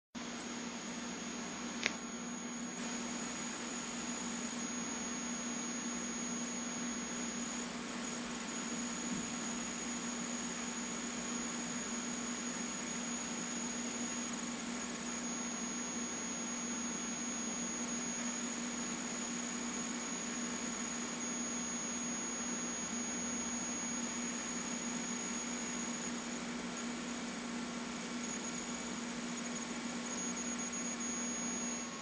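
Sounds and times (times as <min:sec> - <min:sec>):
computer fan whining: 0:00.2 - 0:32.0.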